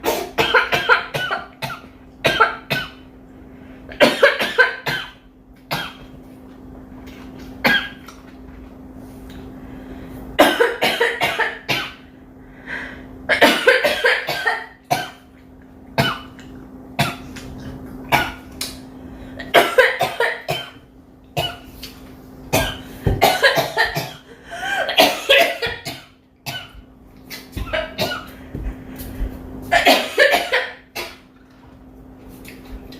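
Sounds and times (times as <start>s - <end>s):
girl coughing: 0.0s - 3.0s, 4.0s - 6.0s, 10.4s - 12.0s, 13.3s - 15.2s, 19.4s - 20.8s, 22.5s - 26.8s, 27.4s - 28.4s, 29.7s - 31.3s.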